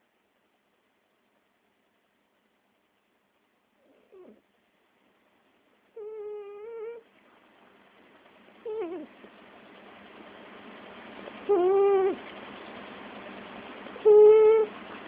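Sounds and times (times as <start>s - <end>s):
cat snoring with squeaky whistles: 3.8s - 4.4s, 6.0s - 7.0s, 8.7s - 9.1s, 11.5s - 12.2s, 14.0s - 14.7s.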